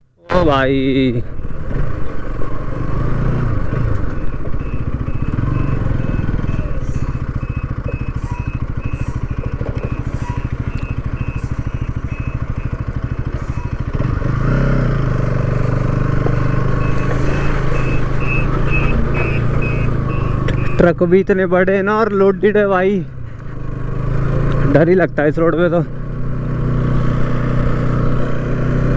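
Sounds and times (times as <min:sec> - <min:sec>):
road traffic: 0:00.0 - 0:28.9
truck engine running: 0:00.3 - 0:28.9
short high beeps: 0:04.2 - 0:14.8, 0:15.4 - 0:21.0.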